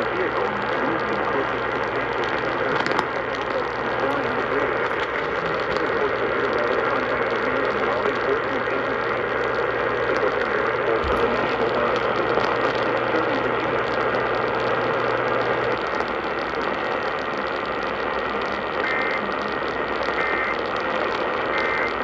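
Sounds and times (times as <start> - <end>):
radio static hiss: 0.0 - 22.0
low hum: 8.9 - 18.4.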